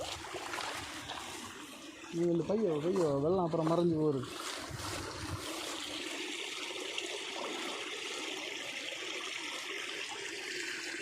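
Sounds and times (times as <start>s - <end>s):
stream trickling: 0.0s - 11.0s.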